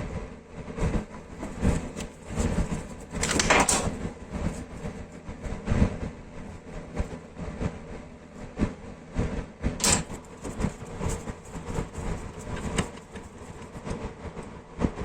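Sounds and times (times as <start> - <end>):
steady hum: 0.0 - 15.0
metallic clicks and knocks: 3.1 - 4.1, 9.8 - 10.8
metal clank: 9.8 - 10.2.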